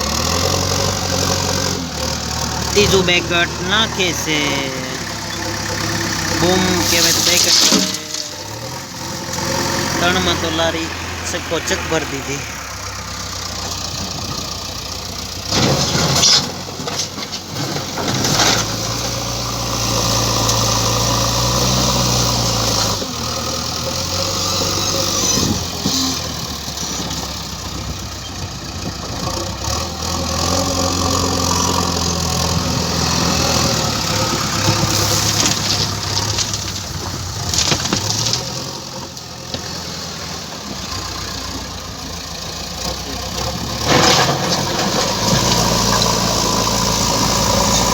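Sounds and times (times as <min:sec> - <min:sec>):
excavator diesel engine revving: 0:00.0 - 0:47.9.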